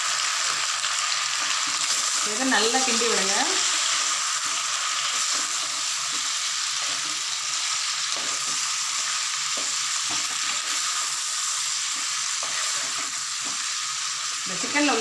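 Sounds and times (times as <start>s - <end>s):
chicken sizzling in oil: 0.0s - 15.0s.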